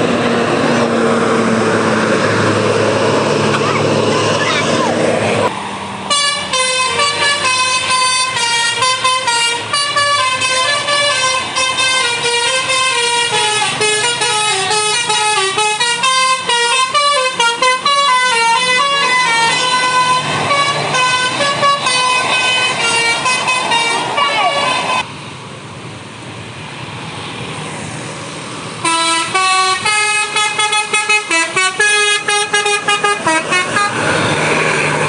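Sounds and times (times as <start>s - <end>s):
musical bus horn tune: 6.1s - 25.0s, 28.8s - 35.0s.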